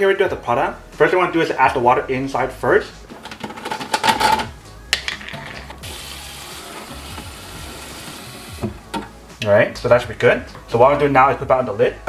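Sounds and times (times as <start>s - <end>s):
handling knocks and clicks: 3.1s - 5.8s
water running into a tank: 5.8s - 9.1s.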